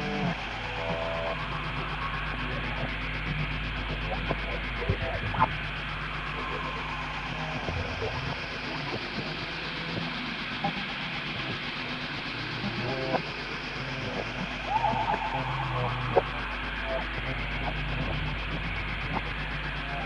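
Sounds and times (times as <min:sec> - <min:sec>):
electrical hum: 0:00.0 - 0:20.0
radio static: 0:12.6 - 0:20.0.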